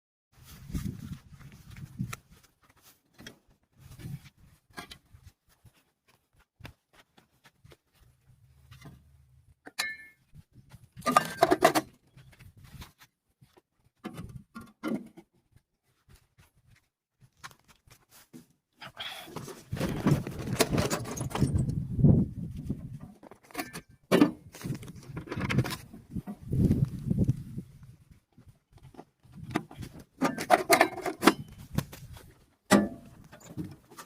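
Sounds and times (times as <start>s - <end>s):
handling clicks and knocks: 10.9s - 12.4s, 19.4s - 21.8s, 28.7s - 34.0s.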